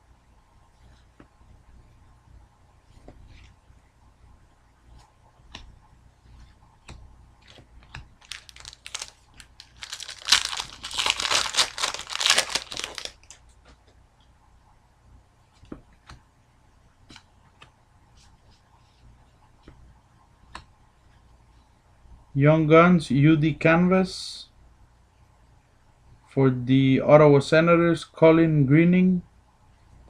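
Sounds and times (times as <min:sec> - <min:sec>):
foil wrapper tearing and crinkling: 0:08.2 - 0:13.4.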